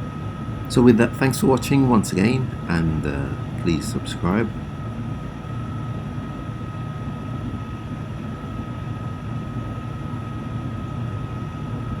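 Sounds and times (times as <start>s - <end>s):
thin high whine: 0.0s - 6.6s
low machine drone: 0.0s - 12.0s.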